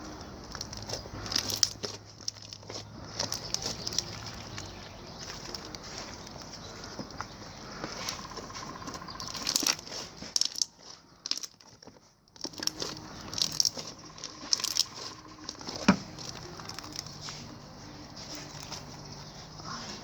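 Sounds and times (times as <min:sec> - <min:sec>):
hands squishing foam slime: 0:00.0 - 0:20.0.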